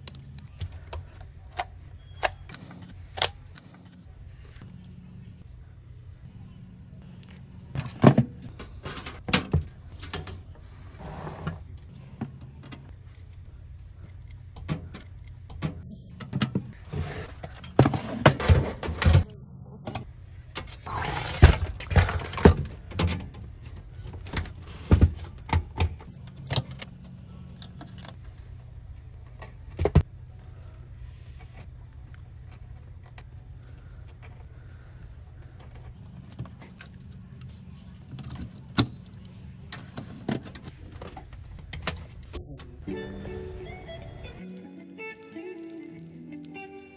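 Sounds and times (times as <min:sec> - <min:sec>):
computer parts clicking and knocking: 0:14.0 - 0:16.8.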